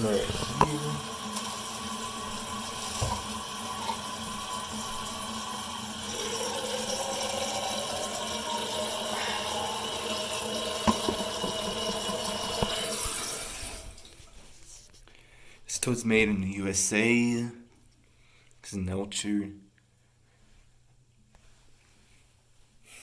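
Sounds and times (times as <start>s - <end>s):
toilet tank refilling water hiss: 0.0s - 14.3s.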